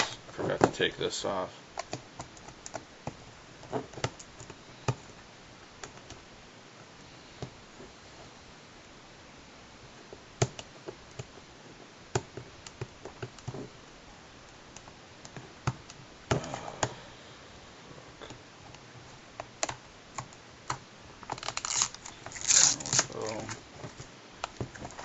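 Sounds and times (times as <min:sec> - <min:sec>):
rustling: 0:21.1 - 0:25.0.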